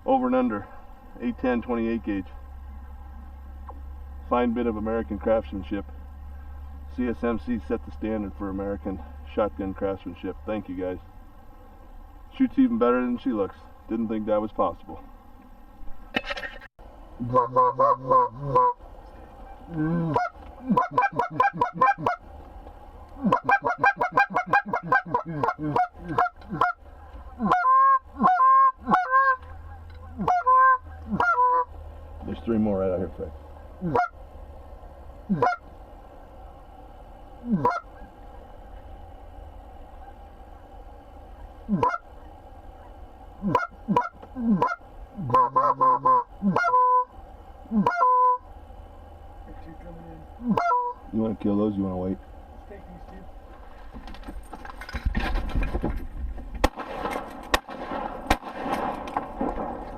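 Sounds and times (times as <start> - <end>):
geese honking: 17.2 - 22.3, 23.0 - 34.3, 35.2 - 35.8, 37.4 - 38.8, 39.8 - 40.7, 41.3 - 48.5, 50.4 - 51.2.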